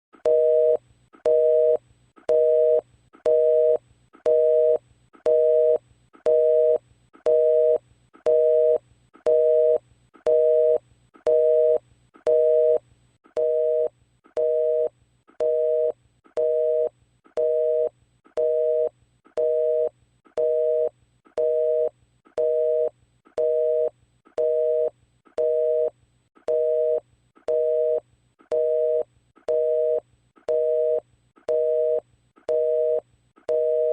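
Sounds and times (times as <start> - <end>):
telephone busy signal: 28.6 - 33.9.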